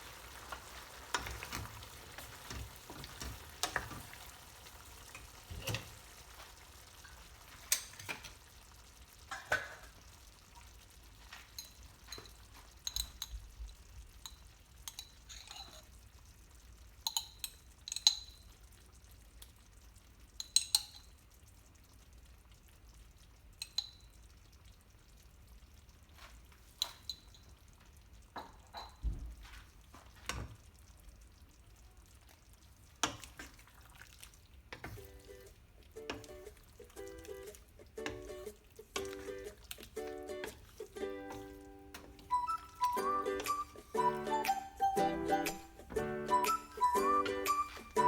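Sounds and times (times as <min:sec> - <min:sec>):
faint sizzle: 0:00.0 - 0:48.0
metal utensil scraping a pan: 0:14.9 - 0:15.9.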